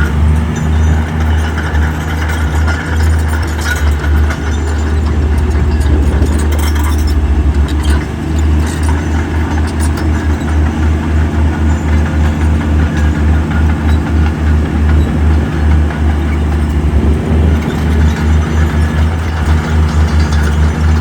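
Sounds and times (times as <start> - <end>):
diesel engine throbbing: 0.0 - 21.0
machine rattling: 0.0 - 21.0.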